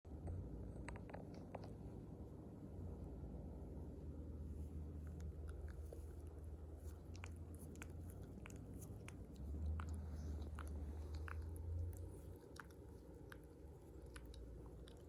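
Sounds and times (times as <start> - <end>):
low steady hum: 0.0 - 15.0
dog lip and tongue smacks: 5.0 - 15.0.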